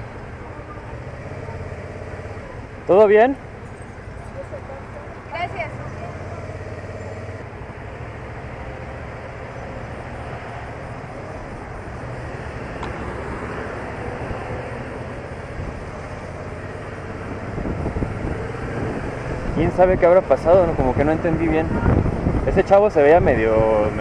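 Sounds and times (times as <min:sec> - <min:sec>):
wind and road noise: 0:00.0 - 0:24.0
motorcycle engine running: 0:00.1 - 0:09.6.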